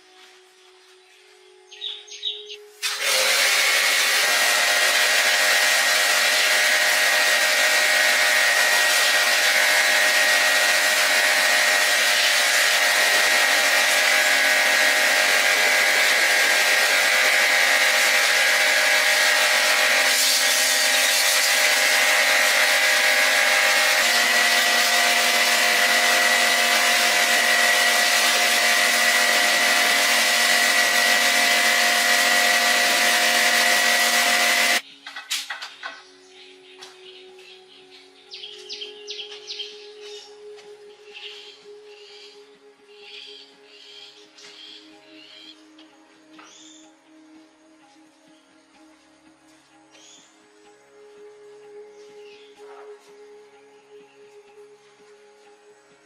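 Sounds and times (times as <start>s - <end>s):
power tool whining: 2.8s - 34.8s.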